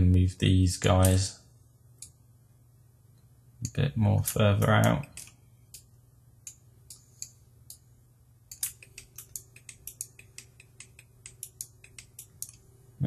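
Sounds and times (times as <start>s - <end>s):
low steady hum: 0.0s - 13.0s
mouse and keyboard clicks: 8.5s - 12.6s.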